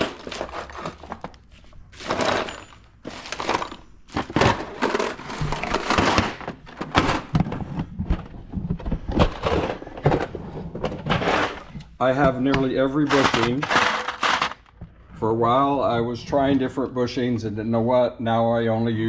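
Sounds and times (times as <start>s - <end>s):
small metal parts clattering: 0.0s - 7.5s, 12.9s - 14.7s
packages rustling: 0.0s - 14.8s.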